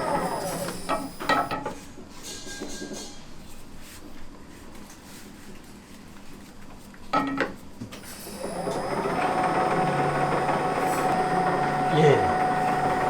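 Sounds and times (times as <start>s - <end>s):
kitchen machine motor humming: 0.0s - 1.5s, 8.0s - 13.0s.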